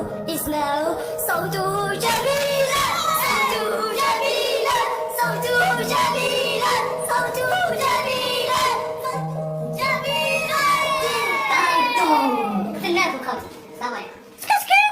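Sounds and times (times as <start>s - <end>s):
high-pitched sped-up voices singing: 0.0s - 12.8s
backing music: 0.0s - 14.4s.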